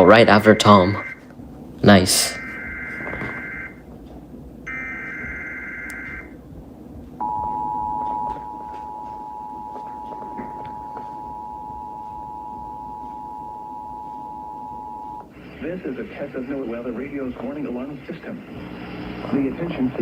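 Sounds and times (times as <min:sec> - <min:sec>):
two-tone alarm signal: 0:00.0 - 0:01.2, 0:02.2 - 0:03.8, 0:04.7 - 0:06.4, 0:07.2 - 0:15.3.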